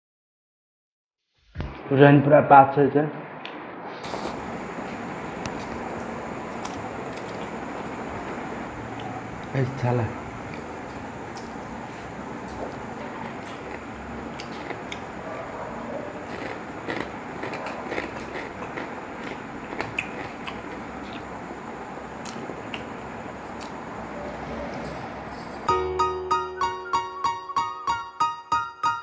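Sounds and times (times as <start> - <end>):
background hiss: 3.9 - 13.3
person chewing food: 6.5 - 9.5, 11.3 - 21.4, 22.1 - 23.8
crunchy clicks: 12.7 - 15.1, 16.3 - 21.4.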